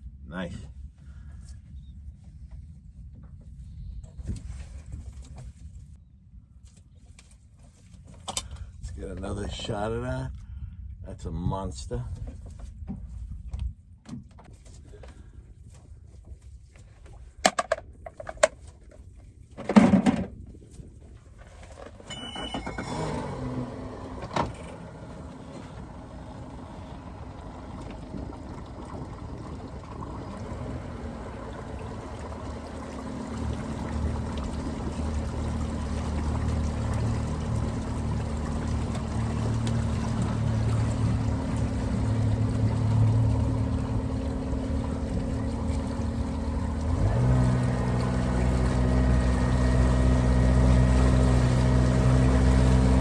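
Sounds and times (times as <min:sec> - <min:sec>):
knocks and thump: 0:19.6 - 0:20.4
boat motor running: 0:22.1 - 0:53.0.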